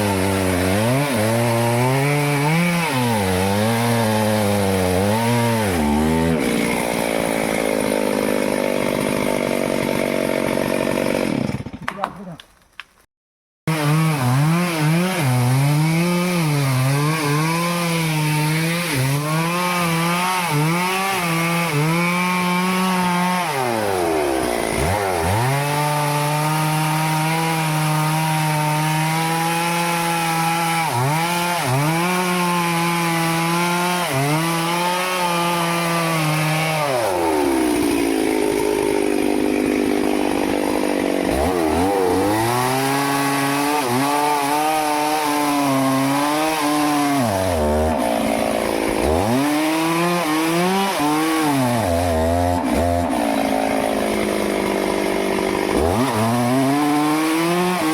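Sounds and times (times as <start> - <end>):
chainsaw cutting wood: 0.0 - 12.9, 13.7 - 57.9.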